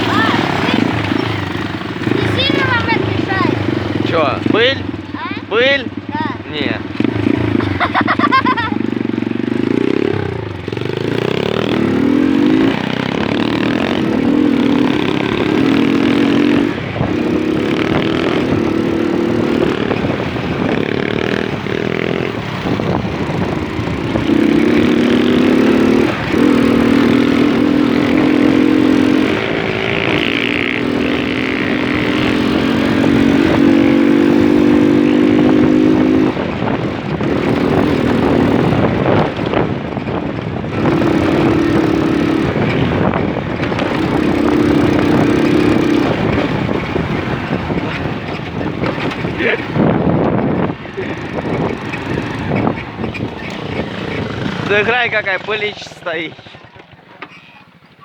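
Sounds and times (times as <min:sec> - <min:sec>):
moped engine running: 0:00.0 - 0:58.0.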